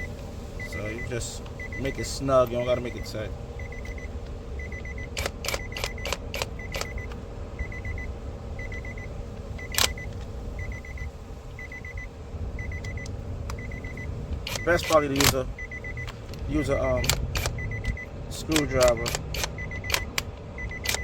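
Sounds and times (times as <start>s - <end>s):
car warning chime beeping: 0.0s - 21.0s
sharp clicks: 5.1s - 7.2s, 9.6s - 10.3s, 14.3s - 21.0s.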